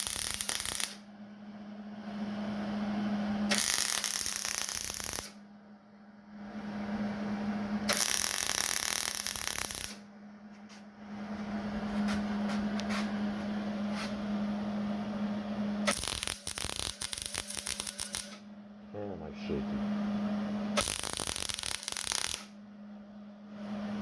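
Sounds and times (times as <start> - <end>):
welder arc crackling: 0.0 - 1.0, 3.5 - 5.4, 7.9 - 10.0, 15.9 - 18.4, 20.8 - 22.5
low hum: 0.0 - 16.0.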